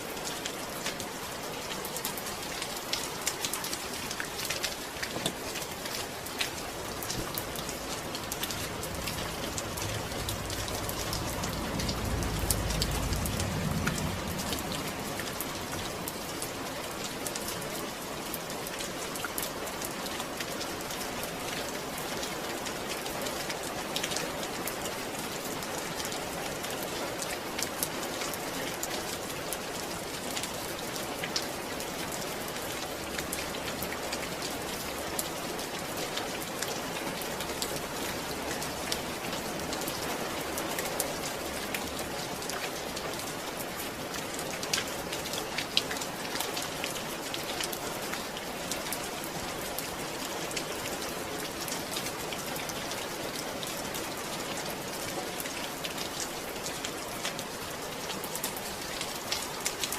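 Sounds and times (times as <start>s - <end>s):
raindrops ticking on a surface: 0.0s - 59.9s
steady rain falling: 0.0s - 59.9s.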